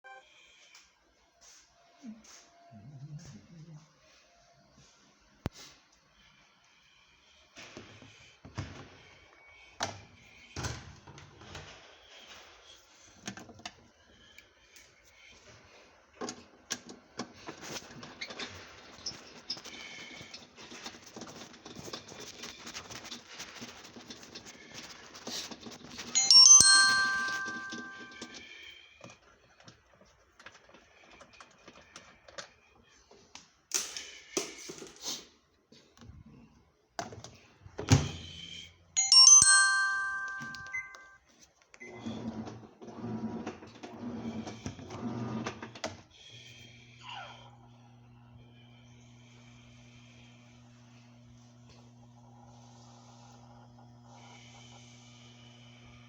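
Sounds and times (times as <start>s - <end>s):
bell-like rings: 26.2s - 28.4s, 39.0s - 41.2s.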